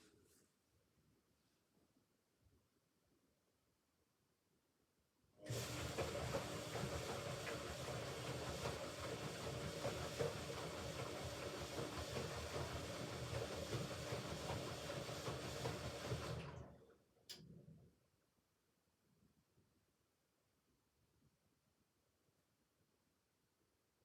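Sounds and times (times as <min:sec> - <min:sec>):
washing machine running: 0:05.4 - 0:16.9.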